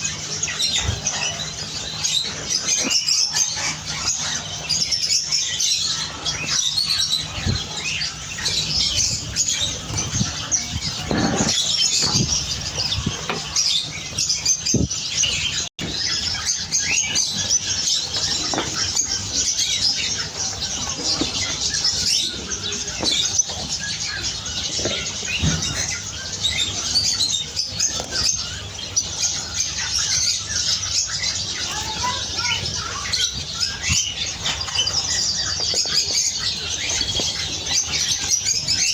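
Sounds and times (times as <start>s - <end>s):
canaries chirping and twittering: 0.0s - 38.9s
wings fluttering: 7.2s - 16.0s.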